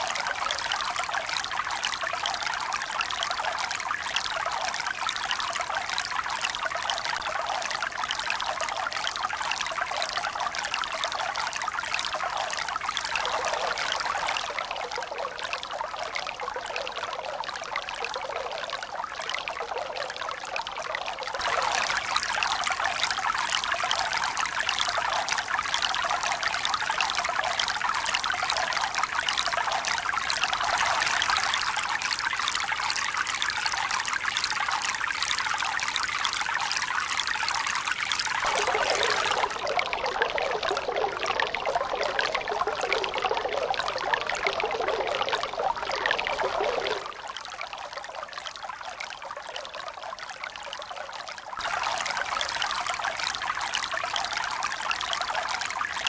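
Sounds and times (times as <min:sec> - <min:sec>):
running water rushing: 0:21.4 - 0:28.1, 0:38.2 - 0:39.9, 0:51.6 - 0:54.6.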